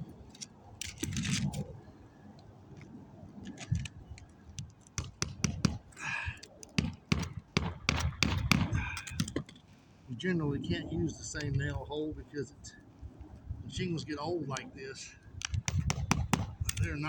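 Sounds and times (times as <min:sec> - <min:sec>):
sharp nailing taps: 0:04.6 - 0:05.8, 0:06.6 - 0:09.6, 0:15.4 - 0:16.9.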